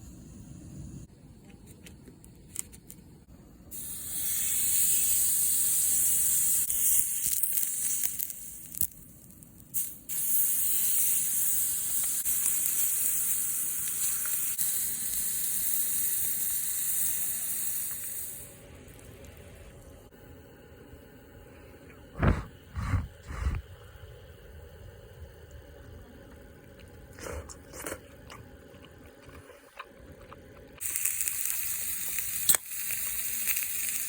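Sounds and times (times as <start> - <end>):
steak sizzling: 9.8 - 18.4, 30.8 - 34.0.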